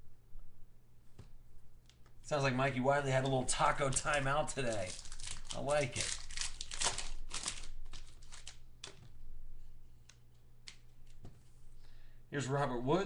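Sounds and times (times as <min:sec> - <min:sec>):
card wrapper rustling and crinkling: 0:03.6 - 0:09.0.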